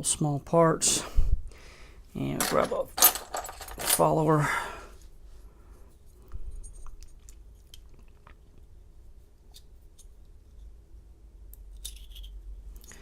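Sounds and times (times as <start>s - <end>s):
clicks and scrapes of lock parts: 2.4s - 4.2s, 11.6s - 13.0s.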